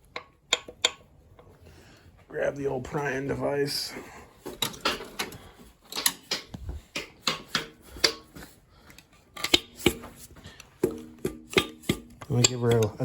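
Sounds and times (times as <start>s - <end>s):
steel tool tapping metal: 10.8s - 12.9s.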